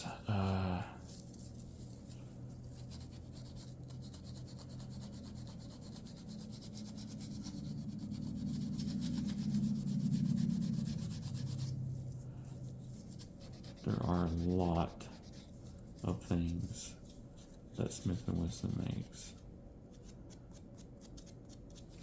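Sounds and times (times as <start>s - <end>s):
abrasive rubbing on wood: 6.9s - 16.8s.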